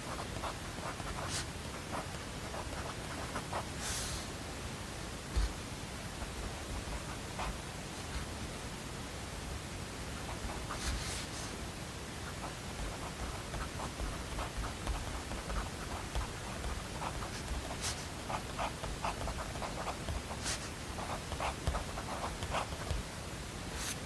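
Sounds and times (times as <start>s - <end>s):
steady white noise hiss: 0.0s - 24.0s
small ticks and scratches: 12.3s - 23.0s.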